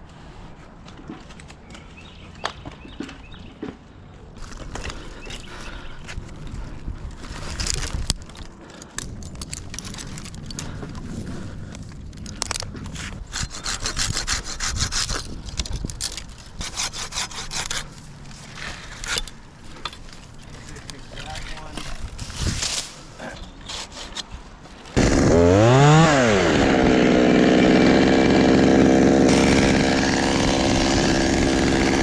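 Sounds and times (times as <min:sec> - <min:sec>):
hand saw cutting branch: 0:13.1 - 0:19.4, 0:23.6 - 0:24.4, 0:25.0 - 0:32.0.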